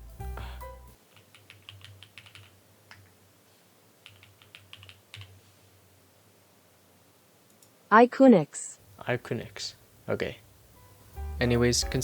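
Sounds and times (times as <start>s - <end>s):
mechanical keyboard typing: 1.1s - 3.0s, 4.0s - 5.4s.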